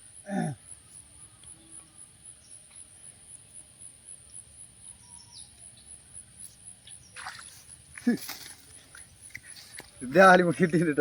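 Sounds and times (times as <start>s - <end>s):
faint bird chirps: 0.0s - 10.2s
high insect drone: 0.0s - 11.0s.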